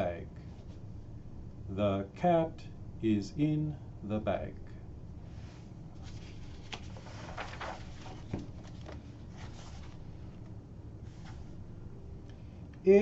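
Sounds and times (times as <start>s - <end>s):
steady low hum: 0.0s - 13.0s
rustles: 5.3s - 10.4s.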